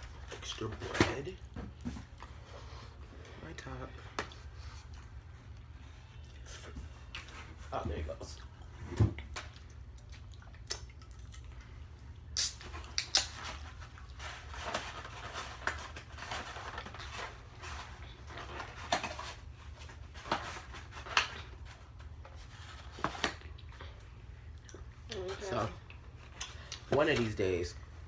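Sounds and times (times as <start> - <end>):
chewing and mouth smacks: 4.3 - 7.3, 8.3 - 14.2, 23.3 - 25.0.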